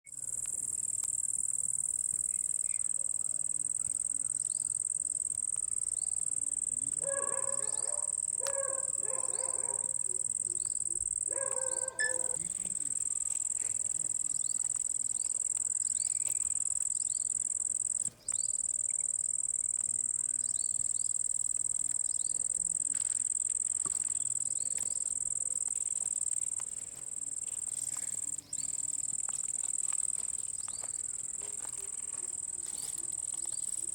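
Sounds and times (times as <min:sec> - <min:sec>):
cricket chorus: 0:00.1 - 0:33.9
short voice-like calls: 0:10.0 - 0:12.7.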